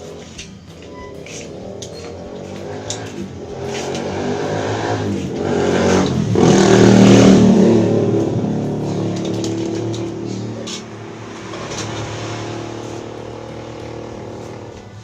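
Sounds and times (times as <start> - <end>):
vehicle engine passing by: 1.4 - 15.0.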